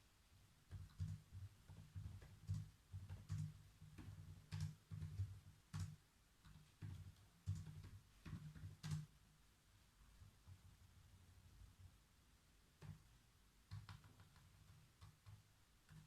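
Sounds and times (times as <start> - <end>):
typing on computer keyboard: 0.7 - 9.1, 13.7 - 16.0.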